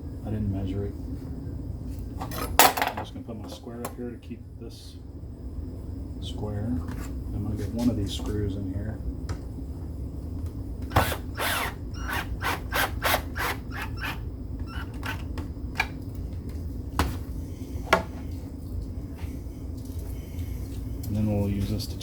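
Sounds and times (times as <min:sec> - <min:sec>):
power drill driving screw: 0:10.9 - 0:15.3.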